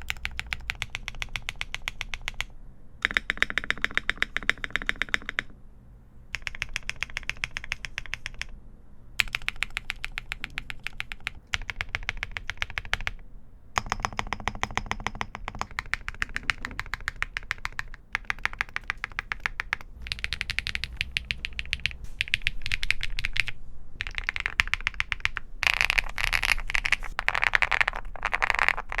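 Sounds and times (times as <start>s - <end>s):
mechanical keyboard key clacks: 13.8s - 22.4s.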